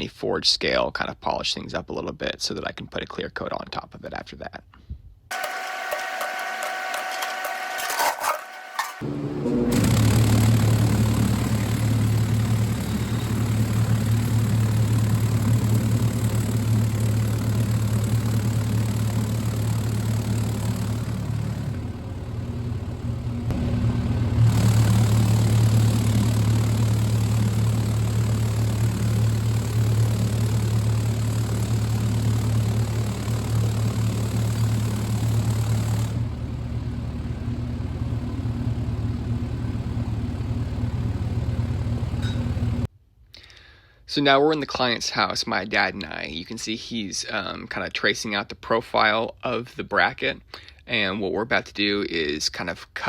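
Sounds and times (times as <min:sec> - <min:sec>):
deburring machine humming: 0:05.3 - 0:42.9.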